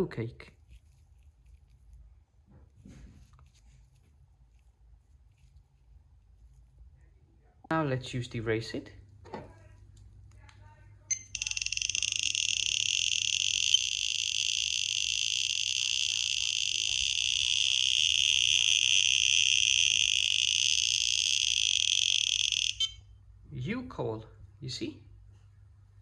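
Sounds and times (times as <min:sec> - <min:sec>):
radiation detector clicking buzz: 0:11.1 - 0:23.0.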